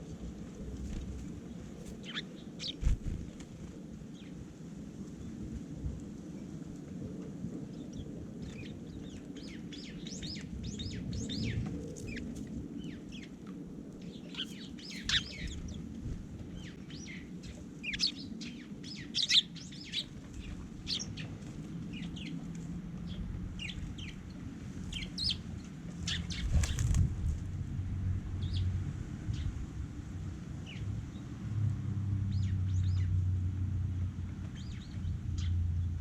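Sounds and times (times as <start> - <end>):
steady low rumble: 0.0 - 6.2, 6.8 - 31.4
small birds chirping: 0.6 - 3.4, 7.8 - 13.4, 14.0 - 15.9, 16.5 - 22.4, 23.0 - 27.0, 34.4 - 36.0.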